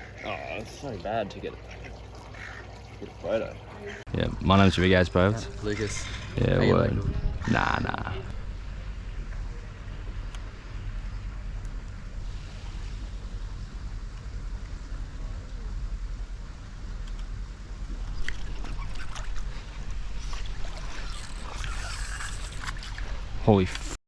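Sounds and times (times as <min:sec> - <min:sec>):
water lapping: 0:00.0 - 0:04.1, 0:05.1 - 0:14.7, 0:18.0 - 0:24.0
wind rumbling on microphone: 0:05.5 - 0:24.0.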